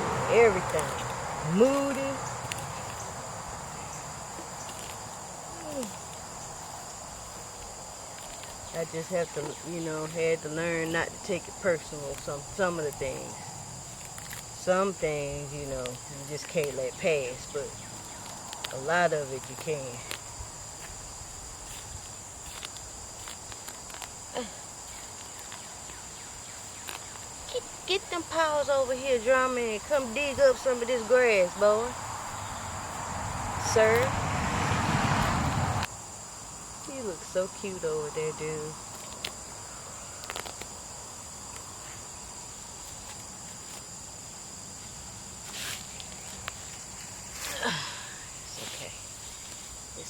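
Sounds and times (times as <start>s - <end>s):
high-pitched insect chorus: 0.0s - 50.0s.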